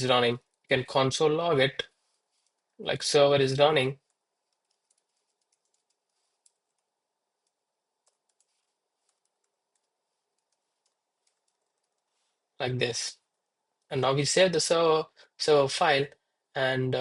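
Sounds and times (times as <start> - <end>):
keyboard typing clicks: 4.0 - 12.0.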